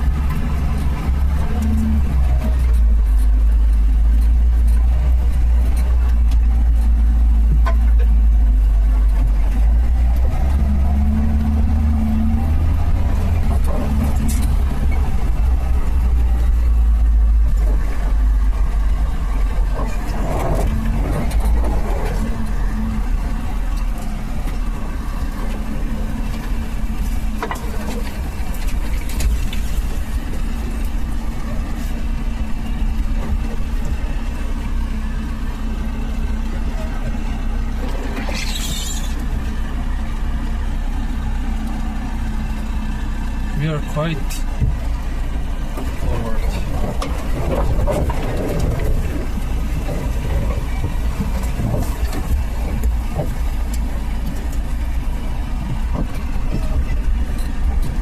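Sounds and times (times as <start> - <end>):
car engine rumbling: 0.0 - 58.0
knocks and rattles: 45.8 - 58.0.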